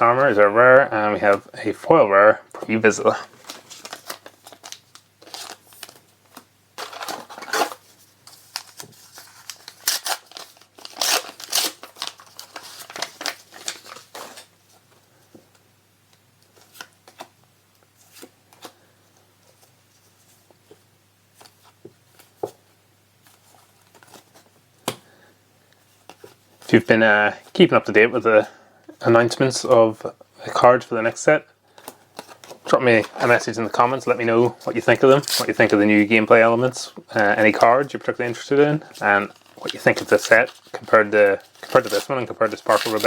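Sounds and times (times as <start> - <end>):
foil wrapper crinkling and tearing: 3.4 - 6.0, 6.8 - 14.5, 37.2 - 43.0.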